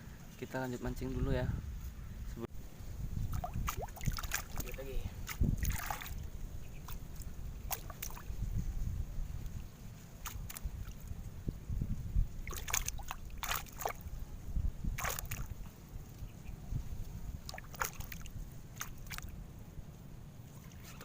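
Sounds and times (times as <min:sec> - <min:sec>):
water sloshing and splashing: 0:03.2 - 0:08.6, 0:09.2 - 0:14.2, 0:14.8 - 0:16.2, 0:16.8 - 0:19.6.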